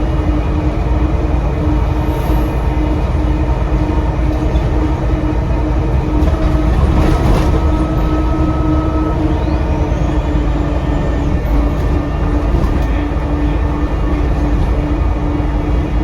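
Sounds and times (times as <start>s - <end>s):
bus diesel engine rumbling: 0.0s - 16.0s
turbocharger whistle: 7.5s - 11.9s.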